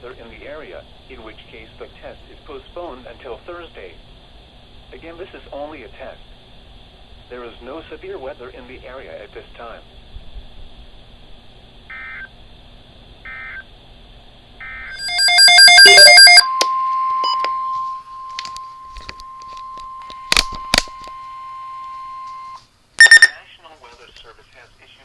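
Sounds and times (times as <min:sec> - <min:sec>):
steady warning alarm tone: 0:14.6 - 0:23.3
harsh data tones: 0:14.7 - 0:23.4
data bursts: 0:14.9 - 0:23.4.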